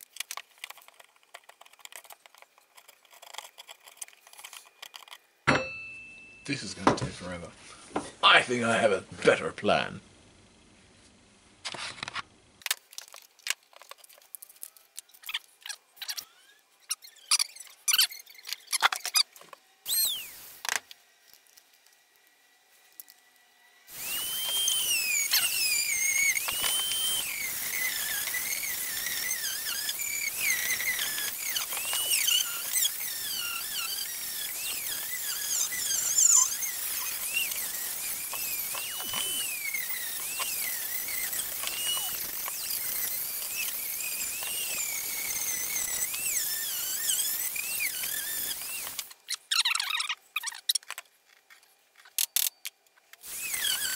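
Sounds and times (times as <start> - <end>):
sharp clicks and squeaks: 0.0 - 5.3, 11.9 - 22.3, 24.0 - 53.9
power tool cutting wood: 14.6 - 49.3, 53.2 - 53.9.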